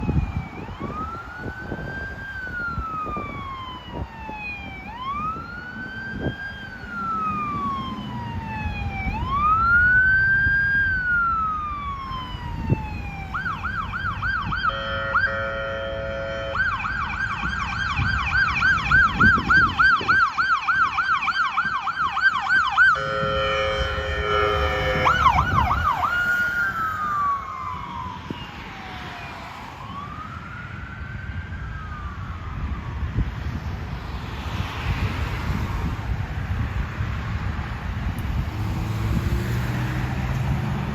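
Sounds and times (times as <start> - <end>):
ambulance siren wail and yelp: 0.0 - 37.7
ambulance air horn blasts: 14.5 - 16.9, 22.8 - 25.9.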